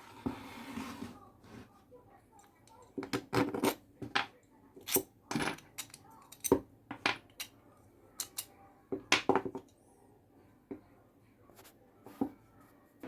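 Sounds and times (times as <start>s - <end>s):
metal objects clinking together: 3.0s - 7.6s, 8.2s - 8.5s.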